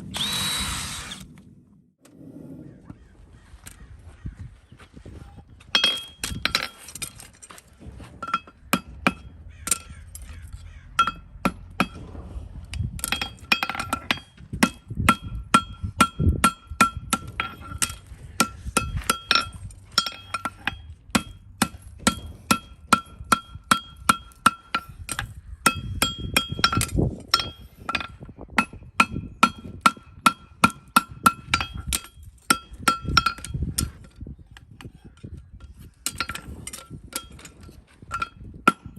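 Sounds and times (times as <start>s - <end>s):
hammer striking steel: 11.0s - 12.2s, 13.0s - 33.5s.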